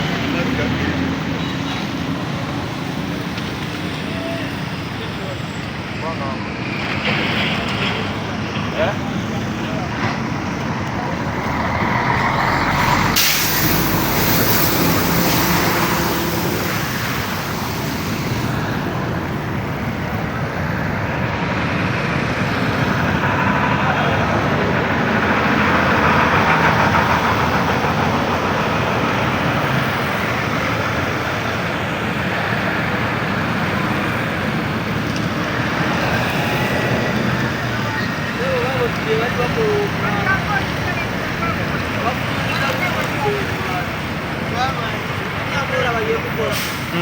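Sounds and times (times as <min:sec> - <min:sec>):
background voices: 0:00.0 - 0:47.0
vehicles passing: 0:00.0 - 0:47.0
sharp hiss: 0:12.8 - 0:18.6.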